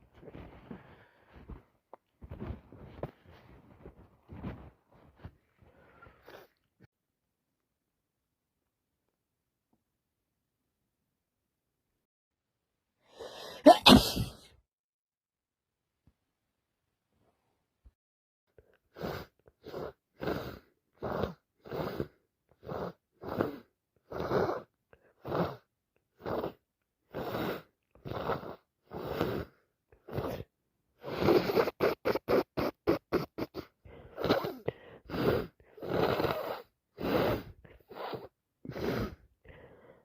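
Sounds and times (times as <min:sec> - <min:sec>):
person sneezing: 0:13.2 - 0:14.5.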